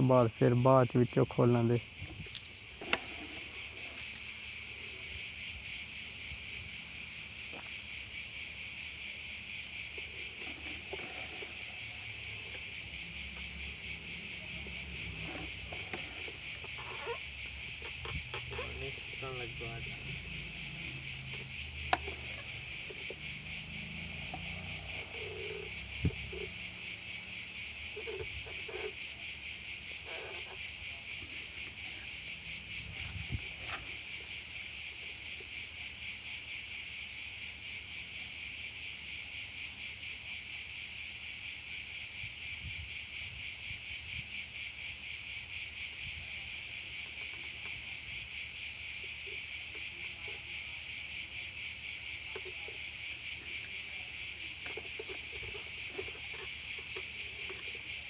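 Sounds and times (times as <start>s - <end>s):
crickets chirring: 0.0s - 58.0s
handling clicks and knocks: 2.0s - 4.0s, 17.9s - 23.4s, 52.3s - 58.0s.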